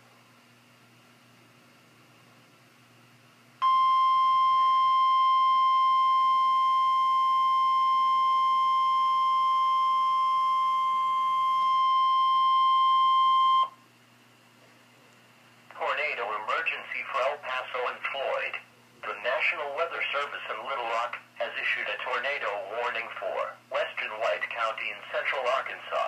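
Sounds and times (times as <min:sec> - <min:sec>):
loud steady alarm beep: 0:03.6 - 0:13.8
faint radio hiss: 0:13.8 - 0:26.0.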